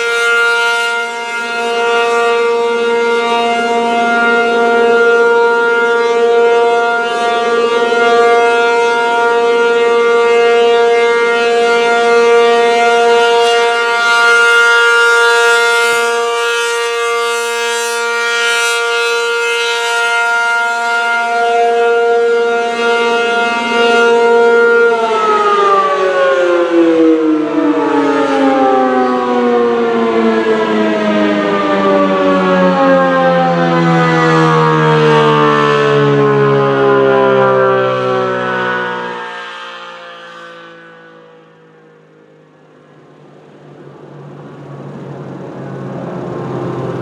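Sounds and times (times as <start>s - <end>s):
warning siren steady tone: 0.0s - 47.0s.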